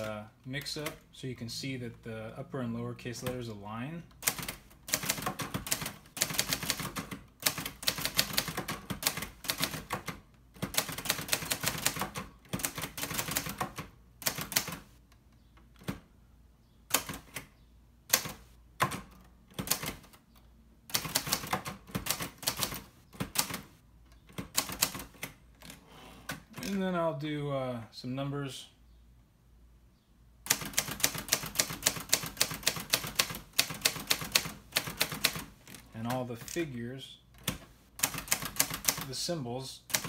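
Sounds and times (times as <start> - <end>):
manual typewriter typing: 0.0 - 1.1, 4.1 - 14.9, 16.9 - 17.5, 18.1 - 20.2, 20.9 - 26.8, 30.5 - 39.2.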